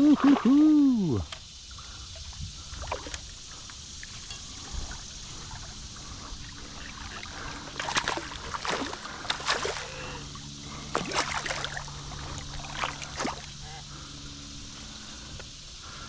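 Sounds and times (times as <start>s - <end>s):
splashes in water: 0.0s - 0.6s, 6.8s - 10.3s, 10.9s - 13.6s
creek water running: 0.0s - 16.0s.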